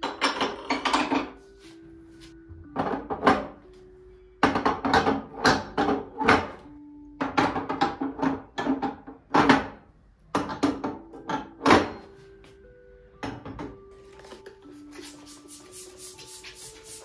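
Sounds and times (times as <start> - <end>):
hard objects knocking and clattering: 0.0 - 1.4, 2.6 - 3.6, 4.4 - 12.0
soft background music: 0.0 - 17.0.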